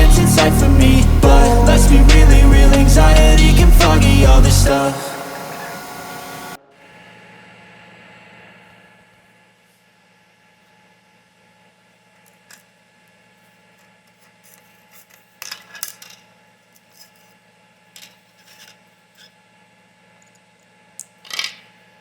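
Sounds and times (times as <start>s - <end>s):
scraping of small parts: 14.1s - 19.4s.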